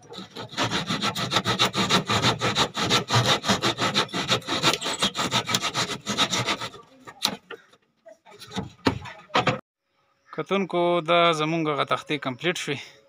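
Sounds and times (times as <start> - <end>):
wood being hand-sawn: 0.0 - 7.5.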